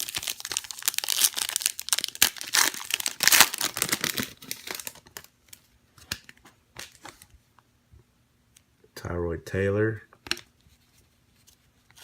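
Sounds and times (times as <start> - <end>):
wrapper tearing and crinkling: 0.0 - 5.3.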